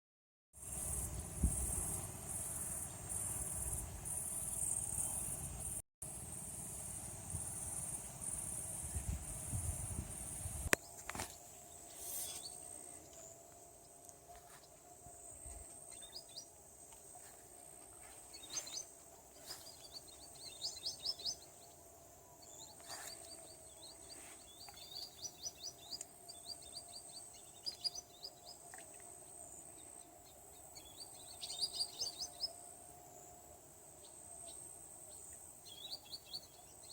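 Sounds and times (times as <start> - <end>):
insects droning: 0.6 - 36.9
bird chirps and trills: 18.3 - 28.6.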